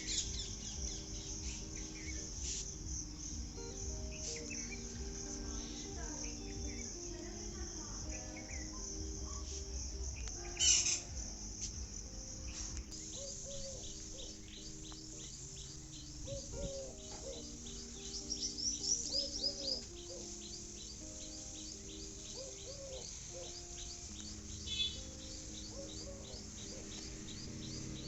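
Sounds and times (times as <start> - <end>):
birds chirping and calling: 0.0 - 28.0
insects droning: 0.0 - 28.0.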